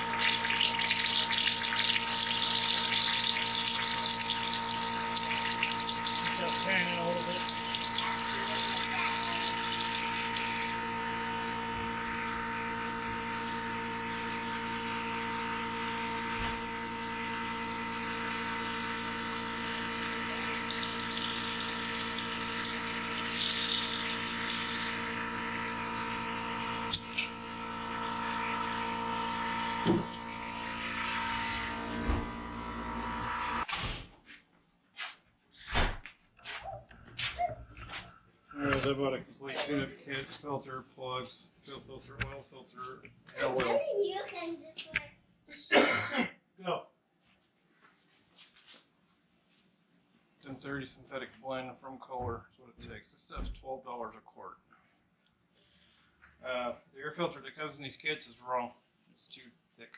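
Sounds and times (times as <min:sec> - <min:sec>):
oil gushing from hose: 0:00.0 - 0:32.1.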